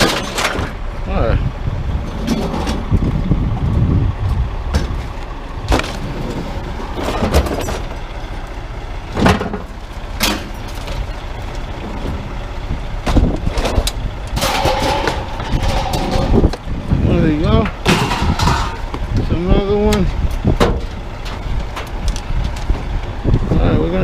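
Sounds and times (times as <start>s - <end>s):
scrap metal knocks and clanks: 0.0s - 0.8s, 2.0s - 2.9s, 4.7s - 8.0s, 9.1s - 12.4s, 13.0s - 16.6s, 17.5s - 19.1s, 19.9s - 22.9s
vehicle motor rumble: 0.0s - 24.0s
scrap clattering: 4.7s - 8.0s, 13.1s - 16.6s, 17.6s - 19.0s.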